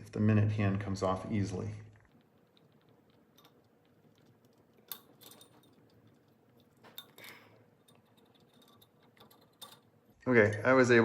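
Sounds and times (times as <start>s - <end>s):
metal clock parts scraping: 2.0s - 10.2s.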